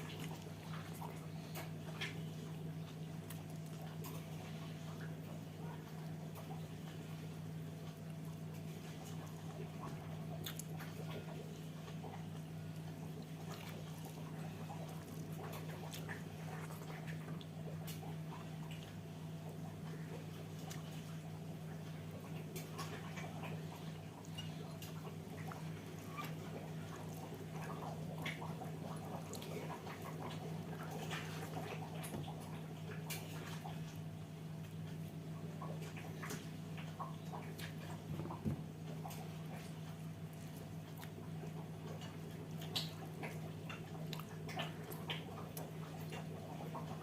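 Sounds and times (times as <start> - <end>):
person chewing: 0.0 - 4.6, 10.4 - 18.0, 40.3 - 46.3
steady low hum: 0.0 - 47.0.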